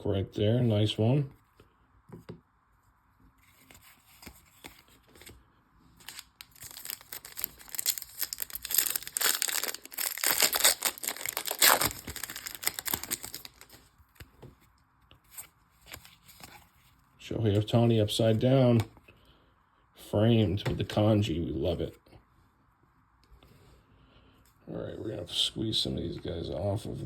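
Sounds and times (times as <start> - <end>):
card pack wrapper tearing and crinkling: 6.0 - 13.9.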